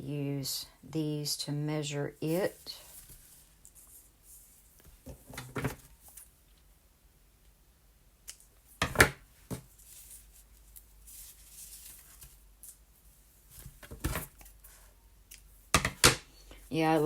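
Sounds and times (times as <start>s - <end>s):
yarn rustling: 2.0s - 6.3s, 9.4s - 14.8s.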